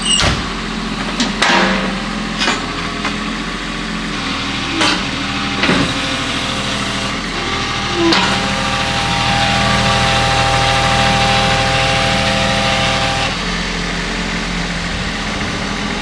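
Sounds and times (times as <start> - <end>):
short squeaks: 0.0 - 0.5
excavator diesel engine running: 0.0 - 16.0.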